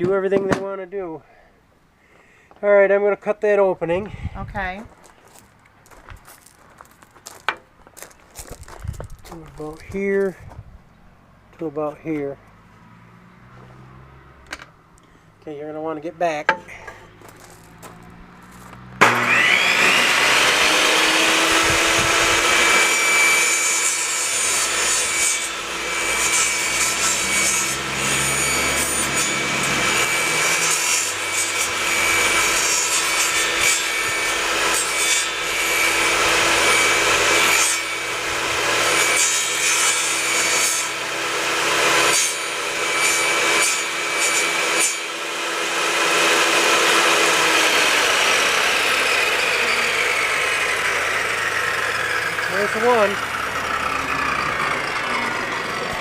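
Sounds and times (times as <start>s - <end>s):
power saw cutting wood: 15.8s - 56.0s.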